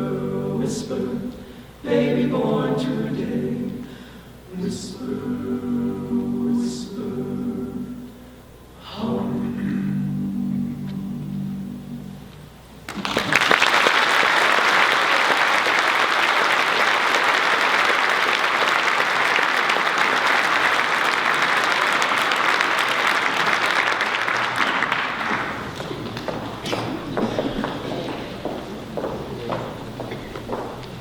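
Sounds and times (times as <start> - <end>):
choir humming a chord: 0.0 - 12.3, 13.7 - 26.0
audience applause: 12.9 - 26.6.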